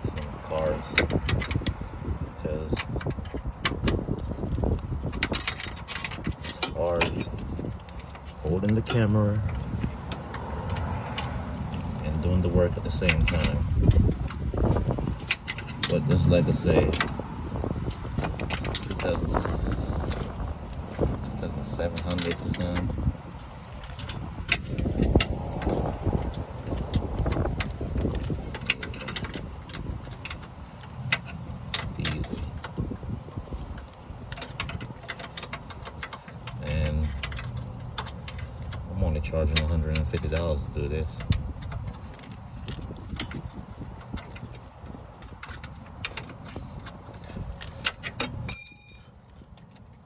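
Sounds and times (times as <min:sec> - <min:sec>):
rustling handling noise: 0:00.0 - 0:50.0
hand tools clicking on metal: 0:02.7 - 0:17.2, 0:17.8 - 0:50.0
metal hand tools clinking: 0:47.2 - 0:50.0
short metallic ring: 0:48.4 - 0:49.8.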